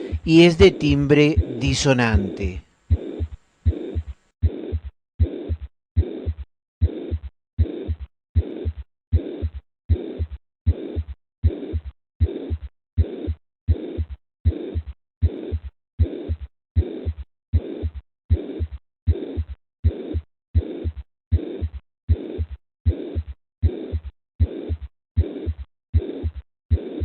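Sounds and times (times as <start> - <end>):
heartbeat with harsh murmur: 0.0 - 27.0.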